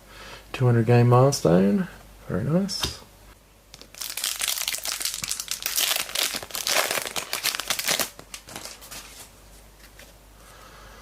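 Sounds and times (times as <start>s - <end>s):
wrapper crinkling and tearing: 3.7s - 9.3s.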